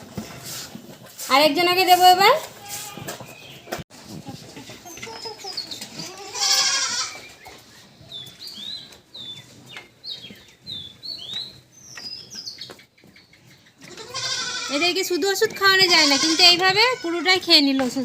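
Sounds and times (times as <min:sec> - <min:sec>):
farm animal bleating: 0:02.4 - 0:03.2, 0:04.9 - 0:07.3, 0:13.8 - 0:17.7.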